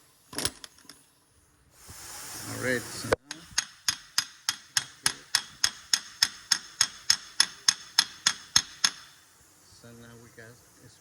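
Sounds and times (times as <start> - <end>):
sharp metallic clicks: 3.2 - 9.2.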